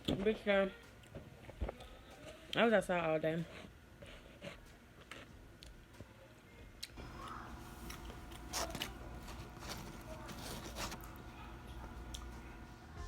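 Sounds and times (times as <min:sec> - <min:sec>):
person chewing chicken wings: 0:07.1 - 0:11.2.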